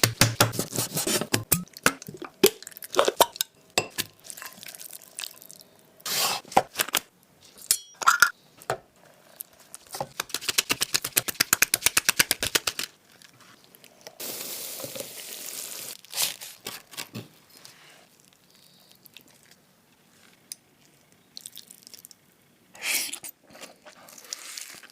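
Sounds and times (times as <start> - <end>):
steady hiss: 14.2 - 16.0
food crunching and tearing: 23.7 - 24.9.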